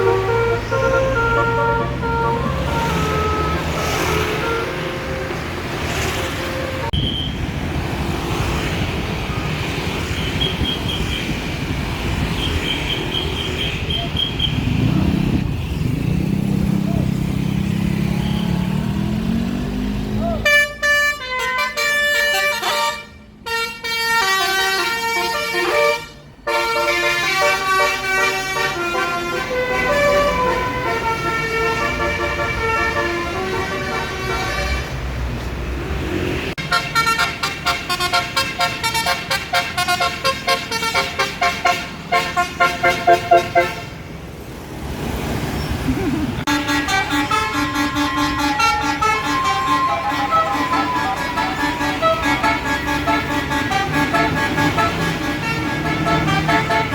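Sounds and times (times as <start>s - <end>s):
bus multi-tone horn tune: 0.0s - 7.5s, 20.2s - 35.4s, 36.6s - 44.1s, 46.4s - 56.9s.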